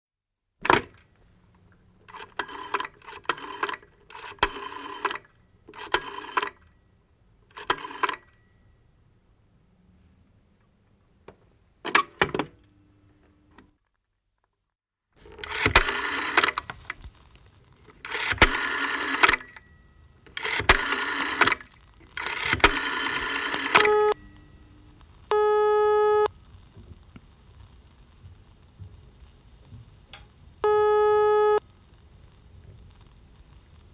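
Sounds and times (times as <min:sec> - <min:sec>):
rotary phone dial whirring: 0:01.6 - 0:06.8, 0:07.5 - 0:08.5, 0:15.2 - 0:25.2
short steady tone: 0:23.8 - 0:26.3.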